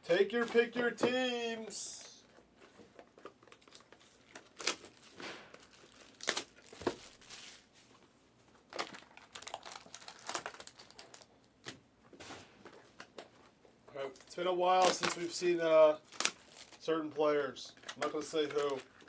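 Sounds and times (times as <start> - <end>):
plastic wrapping crinkling and tearing: 3.0 - 7.8, 8.6 - 11.8, 14.1 - 17.0, 17.7 - 19.0.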